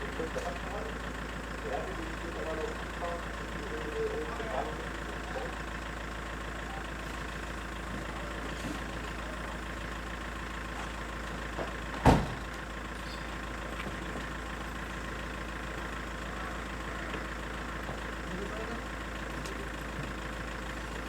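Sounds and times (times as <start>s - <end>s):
fire engine idling: 0.0s - 21.0s
sharp loud thump: 12.0s - 12.4s.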